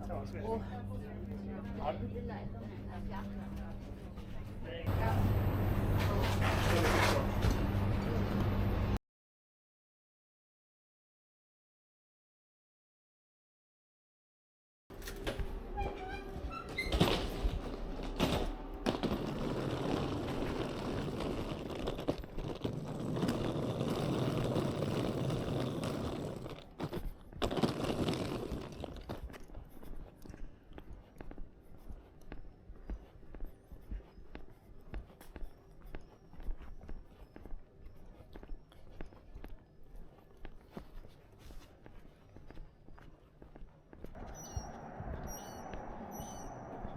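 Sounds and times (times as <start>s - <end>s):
door opening and shutting: 14.9s - 19.4s
footsteps: 14.9s - 46.9s
knocking and scraping: 16.0s - 29.3s.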